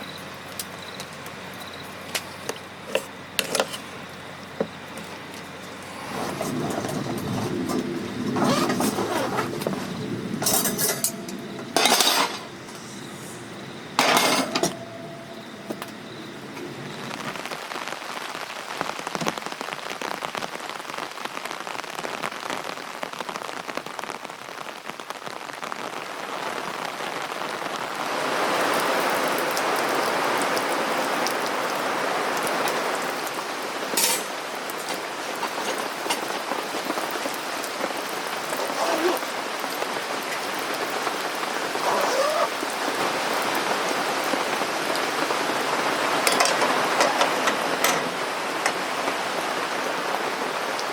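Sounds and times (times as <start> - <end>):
rain pattering: 0.0 - 50.9.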